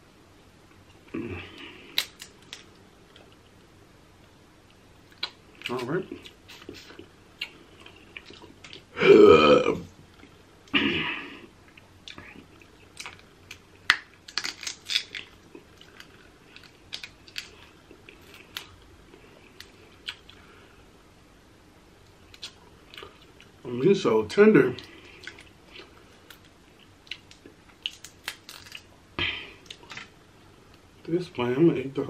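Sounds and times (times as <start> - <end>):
eating clicks and snaps: 1.9 - 3.5, 5.0 - 8.9, 11.7 - 18.8, 22.3 - 23.5, 24.8 - 28.8
loud burp: 8.9 - 9.9.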